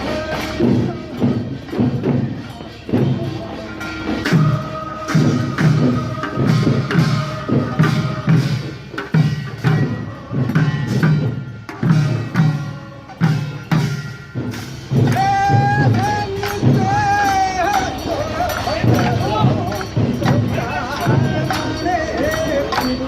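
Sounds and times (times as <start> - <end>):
sharp percussion strokes: 0.0 - 23.0
person singing: 15.0 - 19.8.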